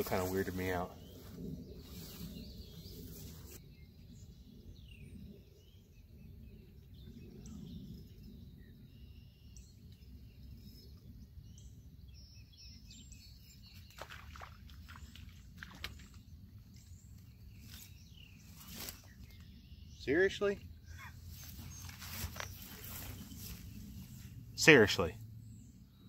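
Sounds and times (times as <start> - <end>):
steady low rumble: 0.0 - 12.8, 20.6 - 26.0.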